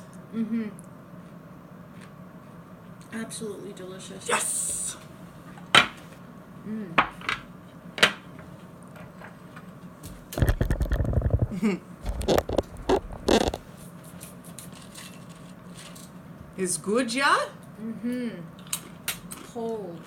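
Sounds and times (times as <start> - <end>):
crackers being chewed: 12.1 - 16.1, 18.6 - 19.6.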